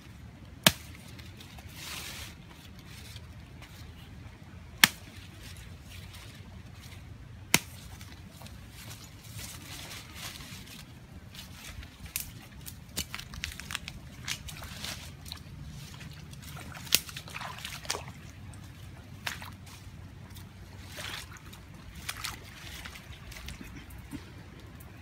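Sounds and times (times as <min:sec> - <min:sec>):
steady low rumble: 0:02.3 - 0:25.0
water sloshing and splashing: 0:05.0 - 0:25.0.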